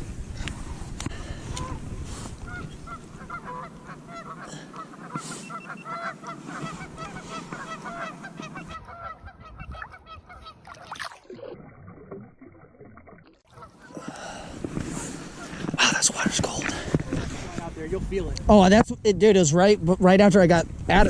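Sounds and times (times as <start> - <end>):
birds honking: 1.5 - 11.0, 13.5 - 16.9.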